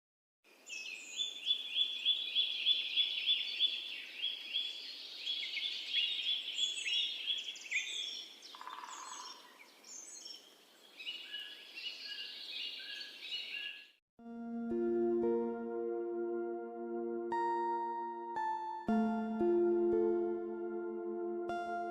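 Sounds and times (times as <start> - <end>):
songbird singing: 0.5 - 14.0
soft music: 14.2 - 21.9.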